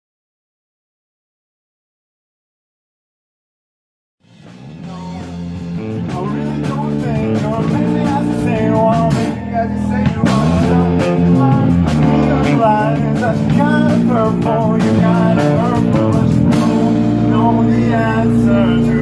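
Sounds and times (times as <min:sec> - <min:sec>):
rock song with guitar: 0:04.4 - 0:19.0.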